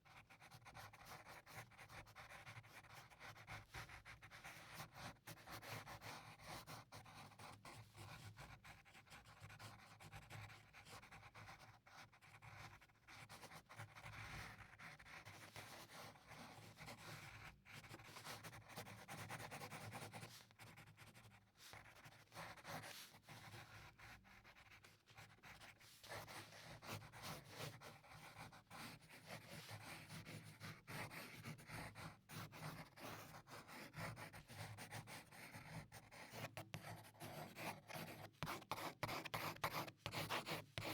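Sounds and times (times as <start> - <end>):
pencil scratching on paper: 0.2 - 40.9.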